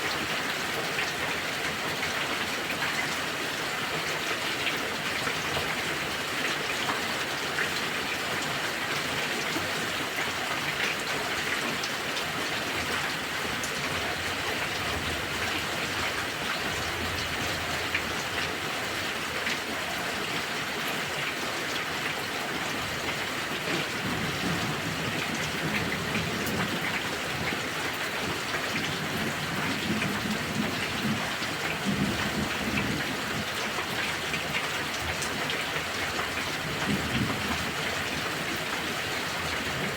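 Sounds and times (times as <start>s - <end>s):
heavy rain falling: 0.0s - 39.9s
low rumble of thunder: 23.8s - 27.6s, 28.2s - 33.6s, 36.5s - 38.3s.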